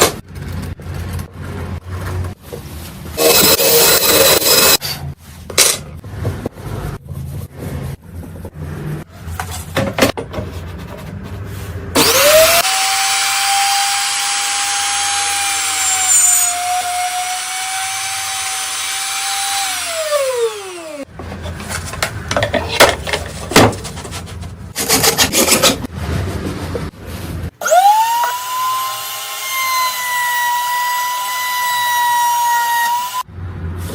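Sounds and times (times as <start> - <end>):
power tool whining: 3.2 - 4.8, 12.0 - 21.0, 27.6 - 33.2
wood scraping and knocking: 21.1 - 27.0.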